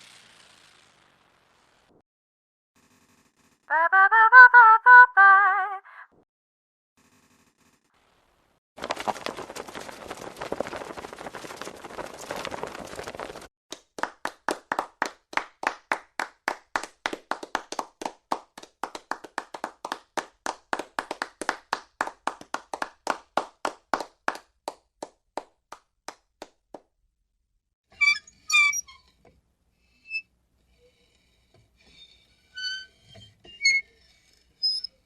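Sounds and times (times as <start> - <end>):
group applause: 8.8 - 26.5
single hand claps: 13.7 - 26.9.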